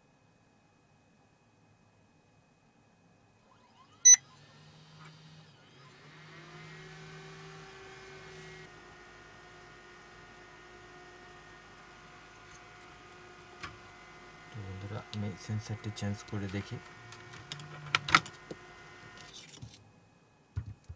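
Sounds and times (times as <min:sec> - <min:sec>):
motor whine spinning up: 0:03.4 - 0:19.5.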